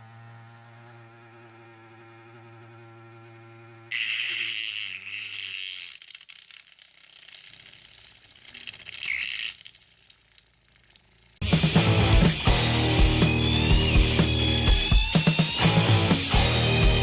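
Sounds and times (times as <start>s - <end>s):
small motor whining: 0.0s - 17.0s
music: 11.4s - 17.0s.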